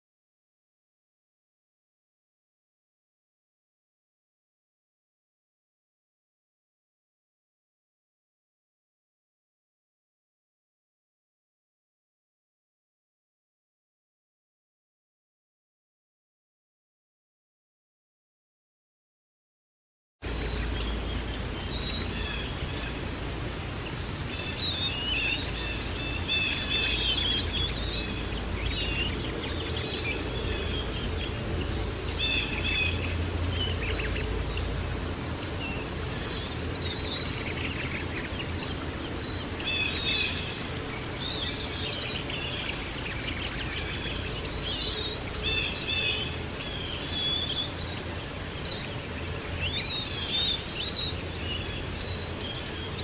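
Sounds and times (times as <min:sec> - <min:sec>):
songbirds chirping and trilling: 0:20.2 - 0:53.0.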